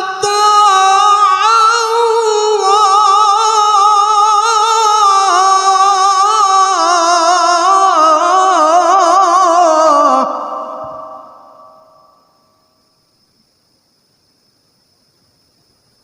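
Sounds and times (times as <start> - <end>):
man reciting in a high voice: 0.0 - 12.2.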